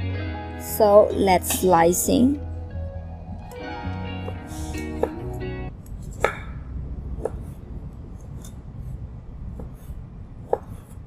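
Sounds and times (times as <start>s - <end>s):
knife slicing on cutting board: 9.6s - 11.0s.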